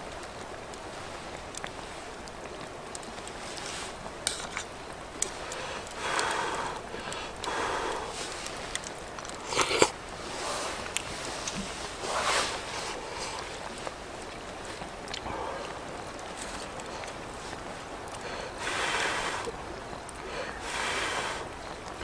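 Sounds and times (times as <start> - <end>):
background hiss: 0.0 - 22.0
rustling and scraping: 8.1 - 14.9.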